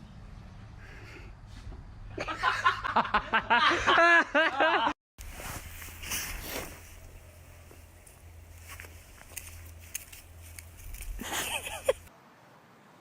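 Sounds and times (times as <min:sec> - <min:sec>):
person laughing hard: 0:02.2 - 0:05.0, 0:11.2 - 0:12.1.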